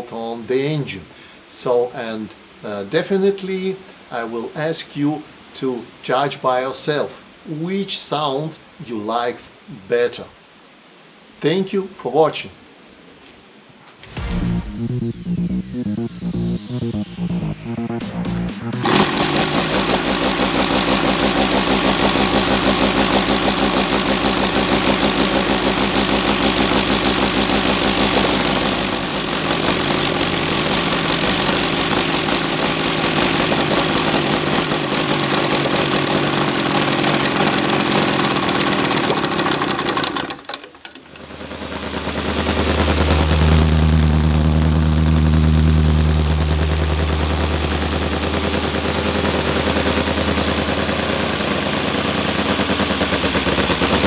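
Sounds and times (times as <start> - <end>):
radial model engine running: 18.8 - 40.3, 41.1 - 54.0.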